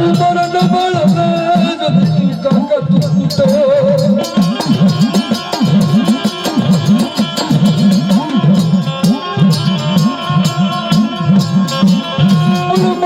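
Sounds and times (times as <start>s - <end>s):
quick hand drum strokes: 0.0s - 13.0s.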